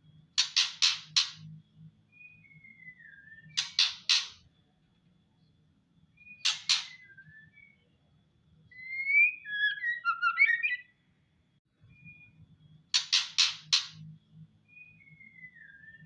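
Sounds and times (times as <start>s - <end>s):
bird harsh rattling call: 0.4s - 1.4s, 3.6s - 4.4s, 6.4s - 7.0s, 12.9s - 14.0s
soft whistled bird notes: 0.4s - 4.5s, 5.3s - 8.1s, 8.7s - 11.2s, 11.8s - 16.0s
bird whistles and chatter: 2.2s - 4.4s, 6.2s - 7.8s, 8.7s - 10.9s.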